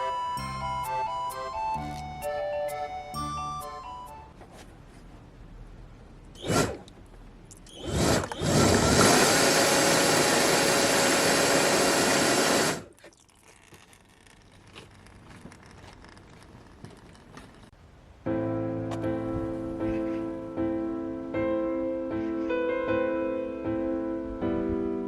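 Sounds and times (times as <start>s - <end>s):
small motor running: 6.4s - 6.8s, 7.7s - 12.9s.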